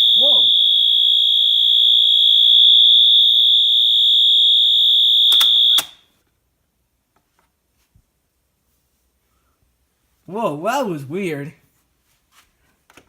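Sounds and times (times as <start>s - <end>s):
electronic horn high-pitched tone: 0.0s - 1.8s
sharp clicks: 5.3s - 6.0s.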